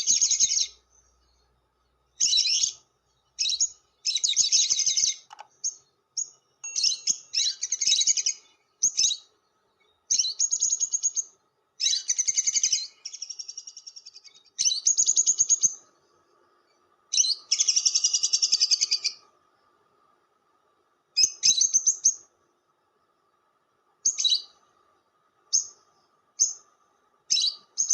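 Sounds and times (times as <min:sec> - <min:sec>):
lovebird chattering: 0:00.0 - 0:00.8, 0:02.2 - 0:02.8, 0:03.4 - 0:09.3, 0:10.1 - 0:15.8, 0:17.1 - 0:19.2, 0:24.0 - 0:24.6, 0:27.3 - 0:27.9.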